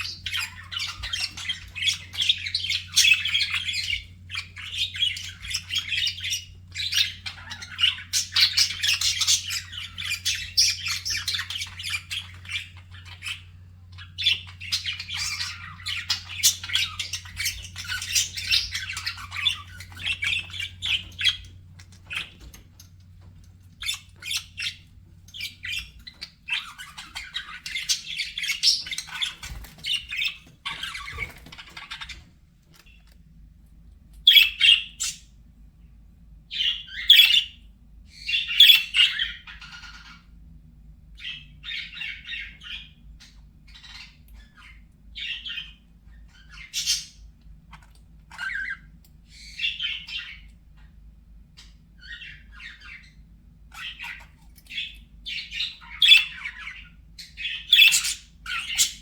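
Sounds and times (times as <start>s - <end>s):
budgerigars chirping and squawking: 0.0s - 33.4s, 34.0s - 35.5s, 36.5s - 59.0s.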